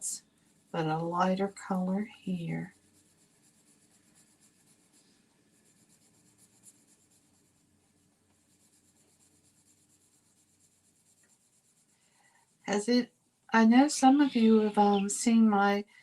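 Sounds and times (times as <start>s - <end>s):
pencil scratching on cardstock: 2.2s - 12.6s.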